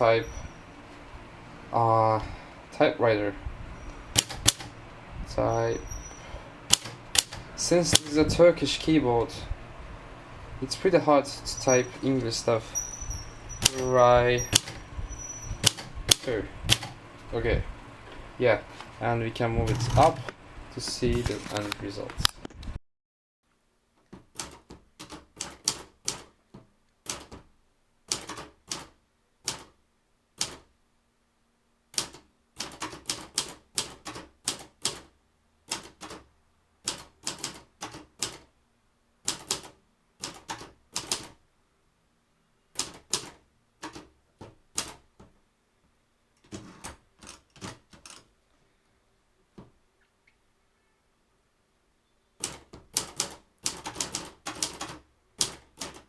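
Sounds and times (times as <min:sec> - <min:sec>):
typewriter key strikes: 0:04.2 - 0:04.8, 0:06.7 - 0:08.2, 0:13.6 - 0:14.8, 0:15.6 - 0:17.0, 0:19.7 - 0:20.3, 0:27.1 - 0:27.4, 0:28.1 - 0:28.9, 0:32.0 - 0:35.1, 0:36.9 - 0:38.5, 0:39.3 - 0:41.3, 0:52.4 - 0:56.0.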